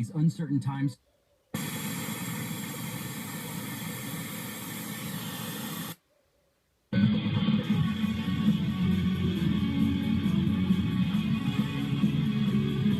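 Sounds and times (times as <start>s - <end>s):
radio static hiss: 0.0s - 6.1s.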